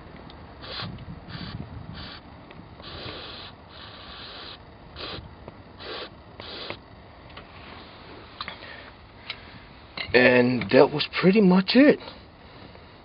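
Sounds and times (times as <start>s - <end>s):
aerosol spray hissing bursts: 0.6s - 2.2s, 2.8s - 6.8s.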